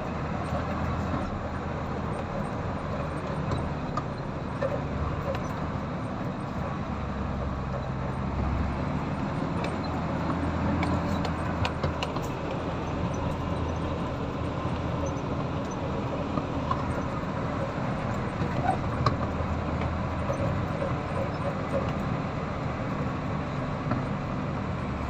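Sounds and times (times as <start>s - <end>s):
excavator diesel engine running: 0.0s - 25.0s
light clicks and knocks: 2.1s - 22.1s.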